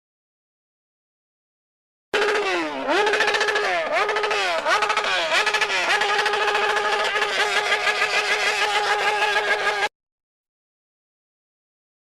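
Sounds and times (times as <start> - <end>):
motorcycle engine accelerating: 2.2 - 9.9.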